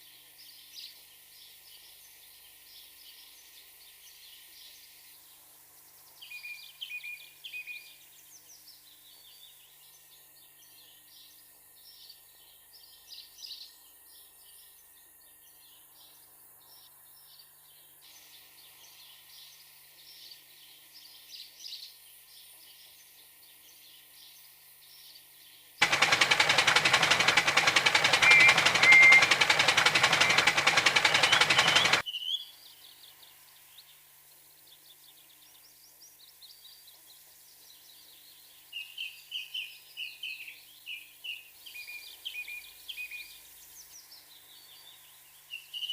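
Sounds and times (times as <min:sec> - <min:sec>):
birds chirping: 0:25.8 - 0:32.0
loud harsh rushing hiss: 0:25.8 - 0:32.0.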